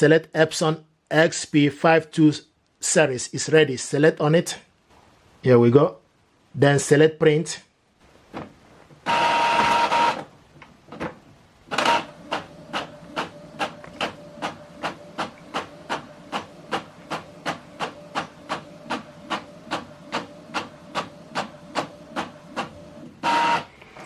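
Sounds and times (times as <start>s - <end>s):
printer whirring: 9.0s - 10.3s, 11.7s - 24.0s
print head carriage clicking: 11.7s - 23.6s.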